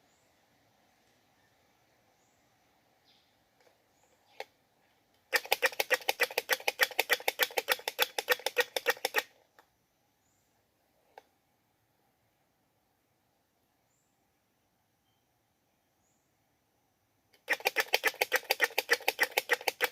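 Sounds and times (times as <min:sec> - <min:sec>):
squirrel clicking call: 0:05.3 - 0:09.3, 0:17.4 - 0:19.9.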